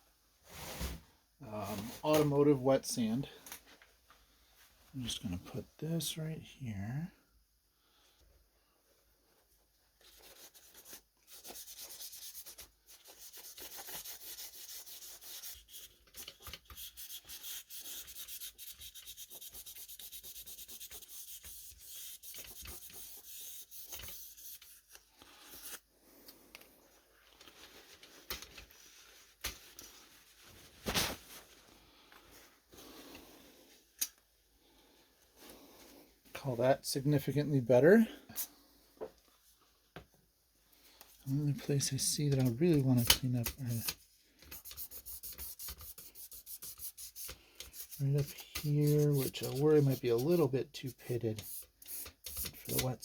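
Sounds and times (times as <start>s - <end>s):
sandpaper scratching on metal: 10.3s - 16.0s, 16.7s - 24.8s, 44.6s - 53.0s.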